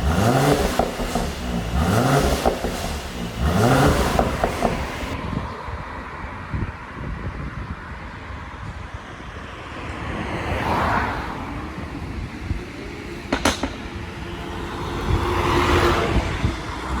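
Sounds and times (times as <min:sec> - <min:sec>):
car exhaust running: 0:00.0 - 0:05.2, 0:12.0 - 0:17.0
sharp exhaust pops: 0:00.0 - 0:05.2, 0:13.3 - 0:15.8.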